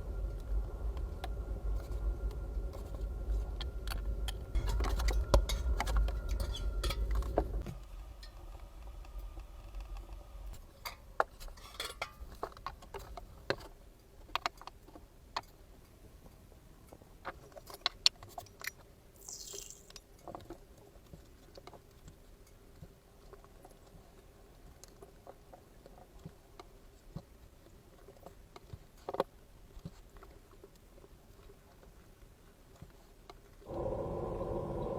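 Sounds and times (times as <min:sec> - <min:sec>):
low rumble: 0:00.0 - 0:10.6, 0:33.7 - 0:34.9
faint steady hum: 0:00.0 - 0:12.4, 0:32.7 - 0:34.9.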